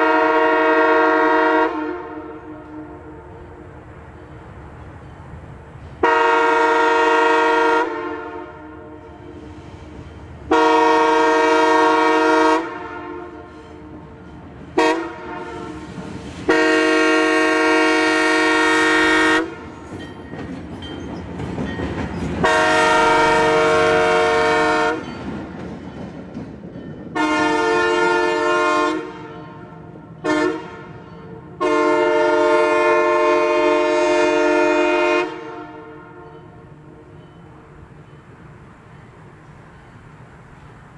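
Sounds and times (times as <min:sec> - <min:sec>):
locomotive air horn blasts: 0:00.0 - 0:03.6, 0:06.0 - 0:09.6, 0:10.5 - 0:14.2, 0:14.8 - 0:19.8, 0:22.4 - 0:25.1, 0:27.1 - 0:37.1.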